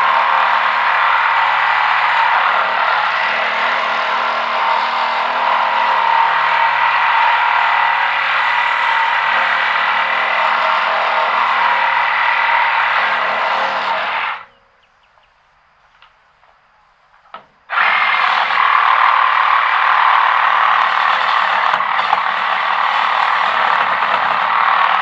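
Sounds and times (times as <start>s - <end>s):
cordless power tool running: 0.0s - 14.5s, 17.3s - 25.0s
faint clicks: 15.0s - 17.6s.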